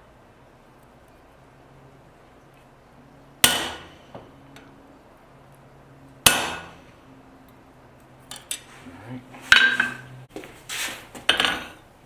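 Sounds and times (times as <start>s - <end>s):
hammer blows on hot steel: 3.4s - 4.4s, 6.2s - 7.0s.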